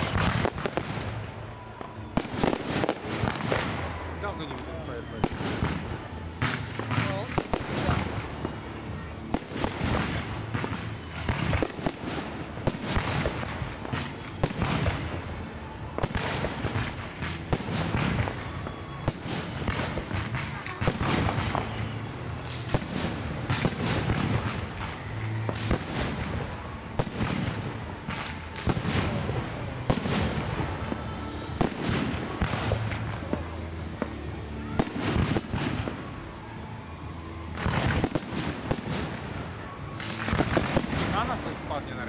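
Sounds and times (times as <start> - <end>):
fireworks bangs and crackling: 0.0 - 42.0.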